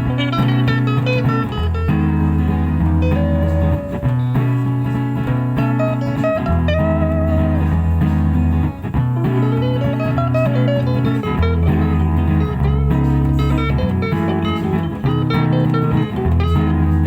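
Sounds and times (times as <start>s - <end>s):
live guitar music: 0.0s - 17.0s.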